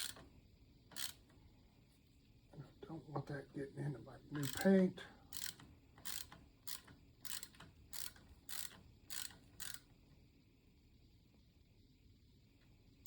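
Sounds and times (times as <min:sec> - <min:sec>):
ratchet wrench clicking: 0:00.0 - 0:00.2, 0:00.9 - 0:01.2, 0:04.4 - 0:09.9.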